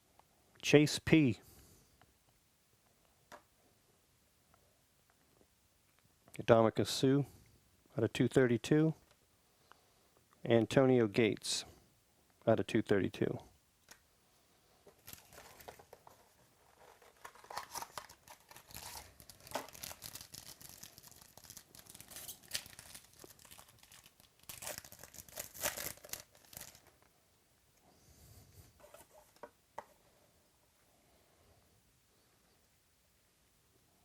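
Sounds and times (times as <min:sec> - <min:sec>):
cards shuffled and handled: 0:14.9 - 0:26.9
wrapper tearing and crinkling: 0:15.0 - 0:16.0, 0:16.7 - 0:27.0.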